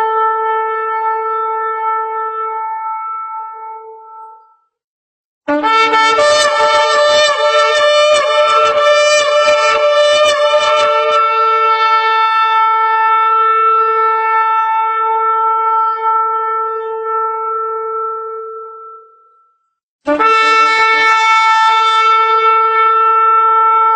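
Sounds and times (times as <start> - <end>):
shofar blasts: 5.5 - 19.3, 20.1 - 23.9.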